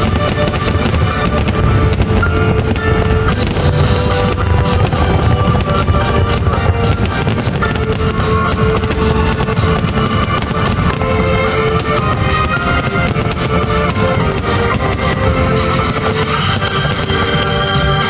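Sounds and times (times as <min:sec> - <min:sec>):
fireworks crackling and popping: 0:00.0 - 0:18.0
rock music with electric guitar: 0:00.0 - 0:18.0.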